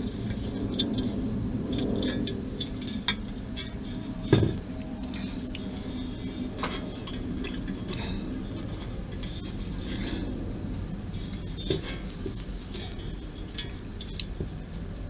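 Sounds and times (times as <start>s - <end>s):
bird chirping: 0.6s - 1.6s, 4.2s - 7.0s, 8.0s - 15.0s.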